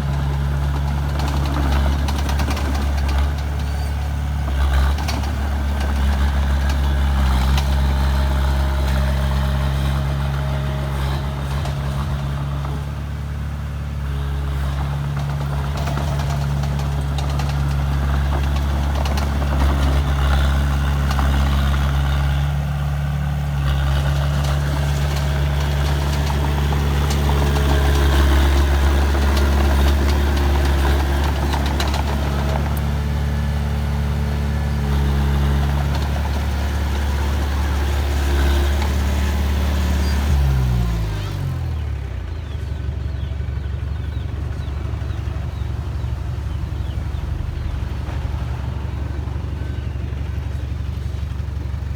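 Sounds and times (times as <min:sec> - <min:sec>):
heavy diesel engine running: 0:00.0 - 0:51.9.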